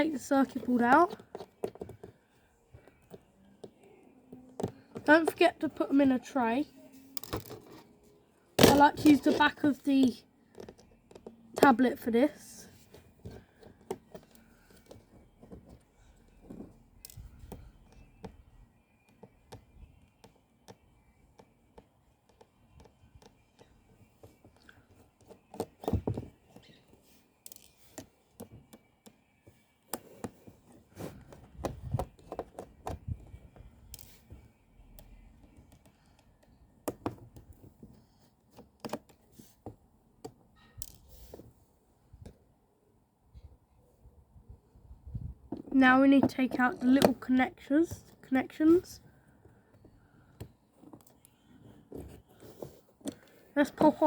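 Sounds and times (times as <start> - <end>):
faint clicks and taps: 12.8 - 41.4.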